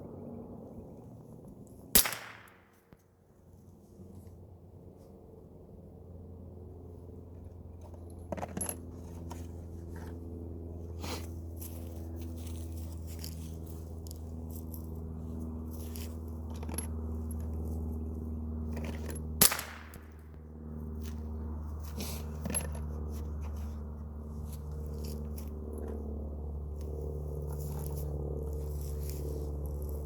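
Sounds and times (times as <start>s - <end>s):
steady low hum: 0.0s - 30.0s
sharp loud crack: 2.0s - 2.7s.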